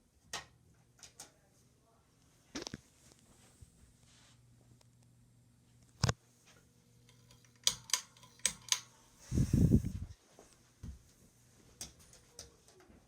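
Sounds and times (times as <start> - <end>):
ceiling fan motor humming: 3.0 - 13.0.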